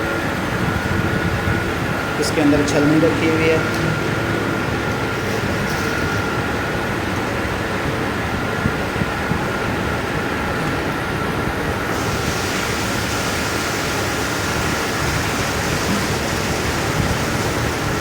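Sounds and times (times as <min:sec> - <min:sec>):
machine hum with faint whine: 0:00.0 - 0:18.0
milk pouring through a strainer: 0:11.9 - 0:18.0.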